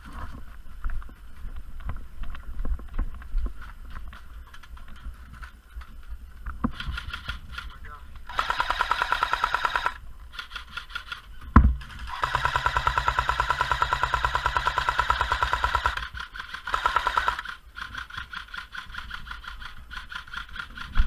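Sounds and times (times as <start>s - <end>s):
airsoft machine gun bursts: 6.8s - 21.0s.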